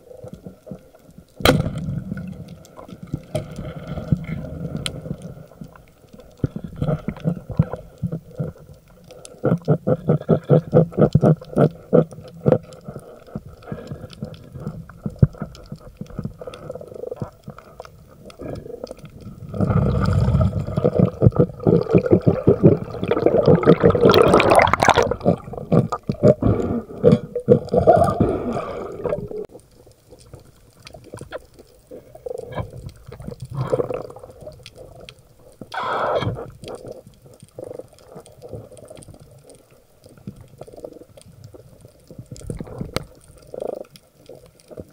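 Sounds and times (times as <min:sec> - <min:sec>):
water sloshing and bubbling: 0:00.0 - 0:44.9.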